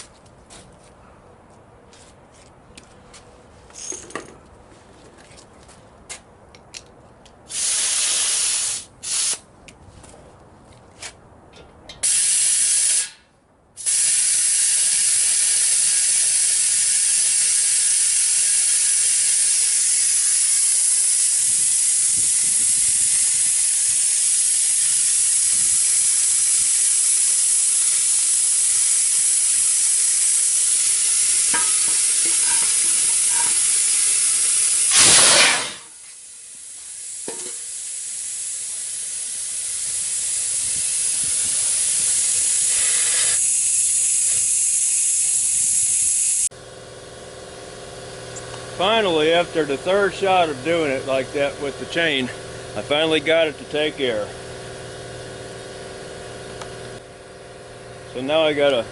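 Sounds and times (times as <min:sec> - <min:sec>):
air blast: 0:07.5 - 0:09.4, 0:12.0 - 0:13.2, 0:13.8 - 0:16.0, 0:20.3 - 0:44.6
compressed air hissing: 0:07.5 - 0:09.4, 0:12.0 - 0:13.2, 0:13.8 - 0:46.5.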